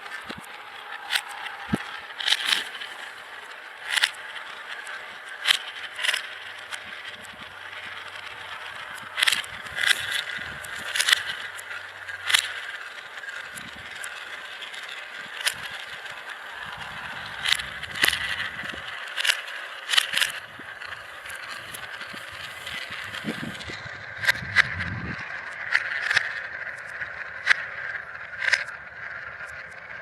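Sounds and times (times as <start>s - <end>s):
marbles clicking on track: 0.0s - 29.8s
marbles rolling on track: 0.0s - 30.0s
low rumble: 20.8s - 25.8s.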